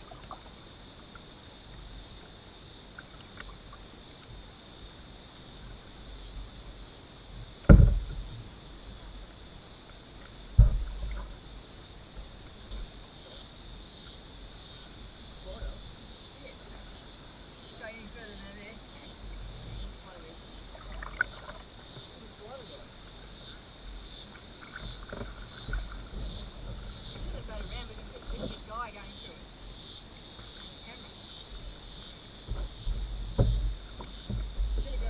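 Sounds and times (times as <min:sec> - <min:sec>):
cicadas buzzing: 0:00.0 - 0:35.0
low knocks on a kayak: 0:07.6 - 0:08.4, 0:10.5 - 0:11.4, 0:24.7 - 0:28.7, 0:32.4 - 0:35.0.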